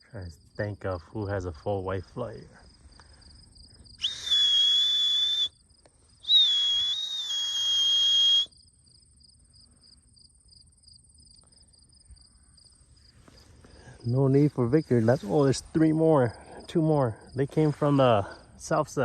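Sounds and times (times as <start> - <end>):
crickets chirping: 0.0 - 19.0
high-pitched whistles: 4.0 - 5.6, 6.2 - 8.6.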